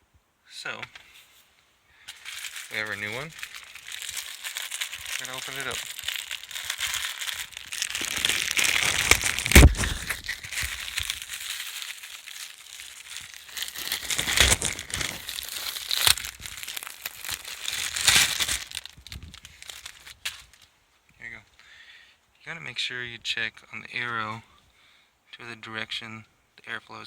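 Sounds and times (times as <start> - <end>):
wrapper rustling and crinkling: 1.0 - 20.7.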